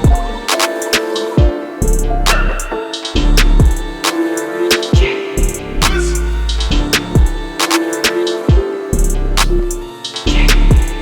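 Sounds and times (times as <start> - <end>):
deep bass drum hits: 0.0 - 0.4, 3.4 - 3.9, 5.5 - 7.5
sharp percussion: 0.0 - 11.0
sustained instrumental tones: 0.0 - 11.0.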